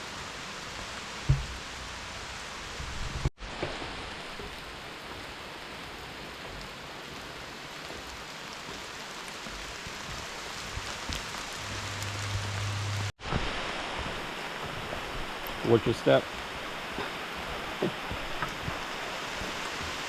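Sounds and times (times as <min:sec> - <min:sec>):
heavy rain hissing: 0:00.0 - 0:20.0
raindrop ticks: 0:03.7 - 0:13.1, 0:14.6 - 0:20.0.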